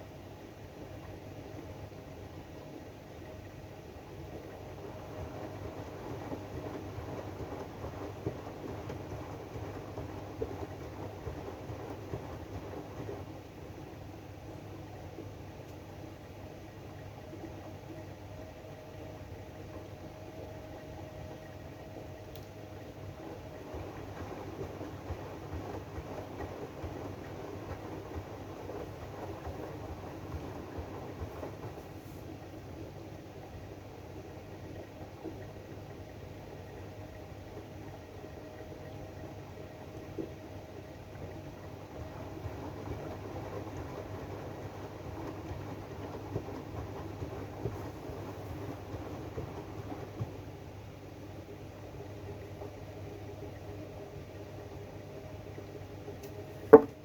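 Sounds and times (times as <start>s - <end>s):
washing machine rumbling: 0.0s - 57.0s
washing machine drum churning: 23.0s - 32.5s
washing machine knocks: 56.7s - 57.0s.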